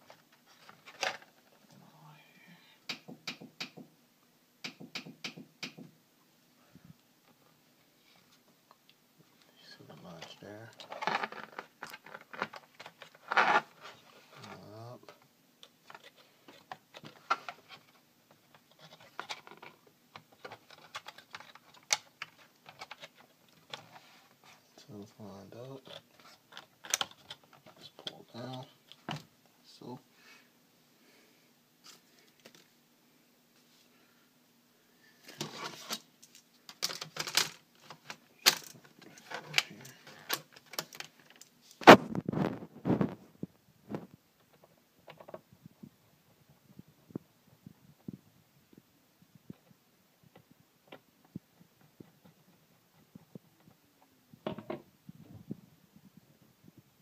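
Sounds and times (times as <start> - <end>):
small clicks taps and scrapes: 15.0 - 24.1
laptop parts clicking and rattling: 15.8 - 24.0, 25.8 - 28.2, 35.4 - 41.6.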